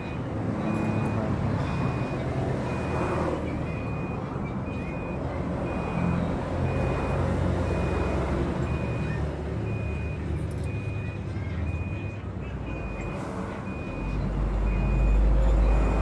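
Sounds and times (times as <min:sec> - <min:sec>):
reversing alarm beeping: 0:00.6 - 0:16.0
engine rumble: 0:03.7 - 0:16.0.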